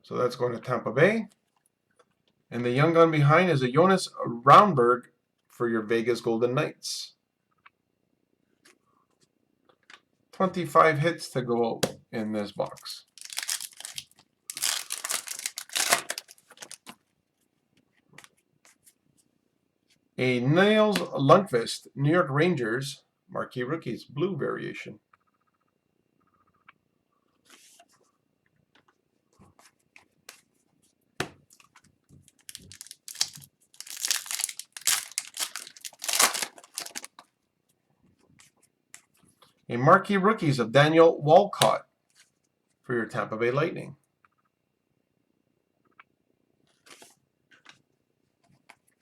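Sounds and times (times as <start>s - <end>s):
foil wrapper crinkling and tearing: 12.8s - 16.9s, 32.3s - 37.2s.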